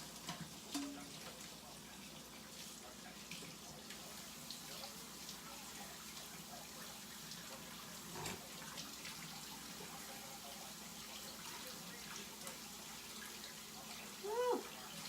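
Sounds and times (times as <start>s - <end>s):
tap running into sink: 8.1s - 8.4s.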